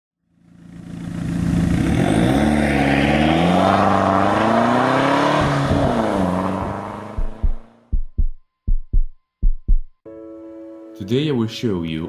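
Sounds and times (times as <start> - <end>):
car engine revving: 1.2 - 7.9.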